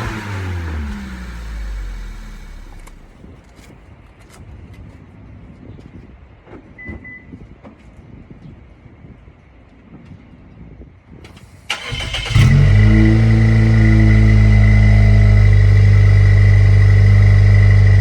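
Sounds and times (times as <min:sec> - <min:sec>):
car engine starting and idling: 0:00.0 - 0:03.2, 0:11.4 - 0:18.0.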